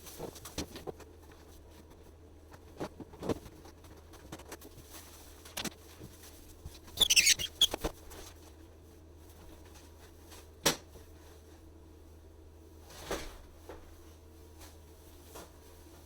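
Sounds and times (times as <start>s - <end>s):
squeaking and scraping: 6.8s - 7.9s.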